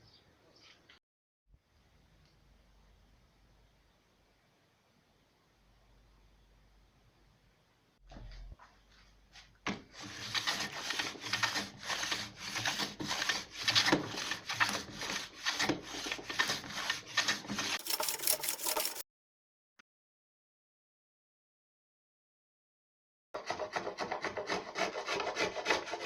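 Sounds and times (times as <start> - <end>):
hand tool rasping wood: 10.0 - 19.0, 23.4 - 26.0.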